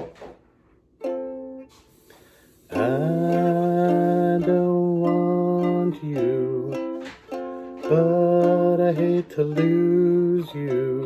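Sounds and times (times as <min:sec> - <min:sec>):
ukulele strumming: 0:01.0 - 0:11.0
man singing long note: 0:02.7 - 0:06.8.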